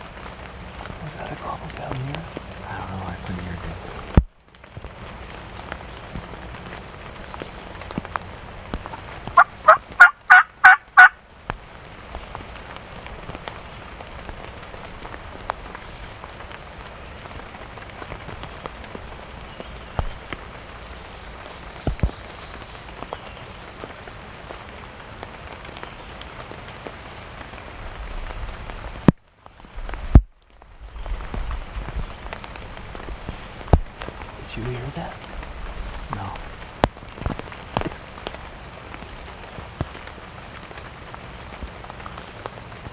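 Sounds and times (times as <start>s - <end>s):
rain patter: 0.0s - 42.9s
turkey yelps: 8.9s - 11.1s.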